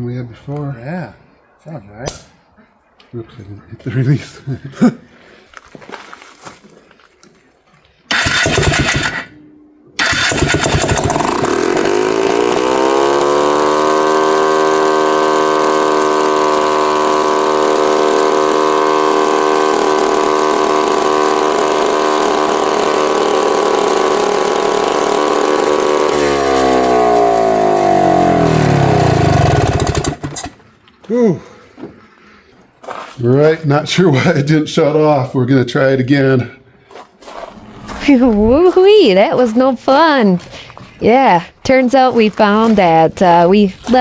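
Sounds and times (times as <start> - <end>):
two-stroke engine starting and revving: 8.1 - 9.4, 10.0 - 30.7, 37.3 - 44.0.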